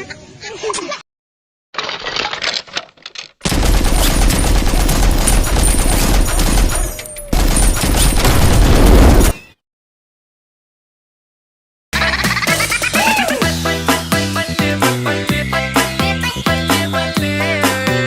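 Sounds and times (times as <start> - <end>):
rapid sharp bangs: 3.4 - 9.4.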